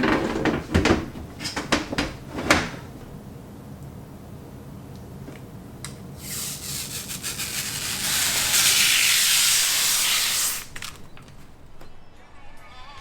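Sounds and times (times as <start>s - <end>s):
loud even hiss: 6.2s - 11.7s.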